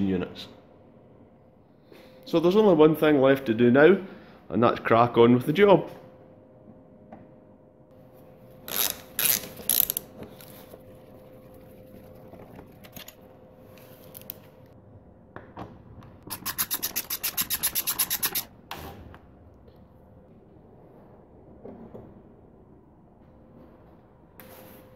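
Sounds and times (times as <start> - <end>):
ratchet clicking: 8.7 - 10.0, 16.3 - 18.5
scraping noises: 16.3 - 18.5.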